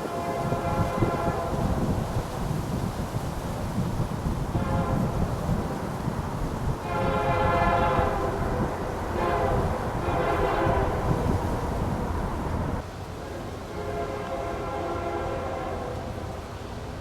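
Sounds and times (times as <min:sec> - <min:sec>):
locomotive air horn blasts: 0:00.0 - 0:02.3, 0:04.4 - 0:06.0, 0:06.8 - 0:12.0, 0:13.6 - 0:16.4
passing train rumble: 0:00.0 - 0:17.0.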